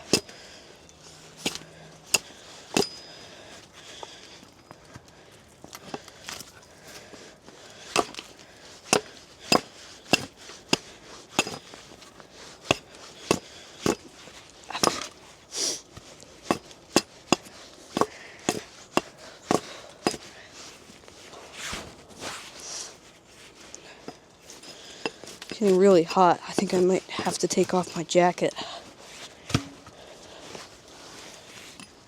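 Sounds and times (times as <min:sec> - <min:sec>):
axe chopping log: 0:00.0 - 0:00.4, 0:01.4 - 0:03.2, 0:07.9 - 0:15.1, 0:16.4 - 0:20.3, 0:29.5 - 0:29.9.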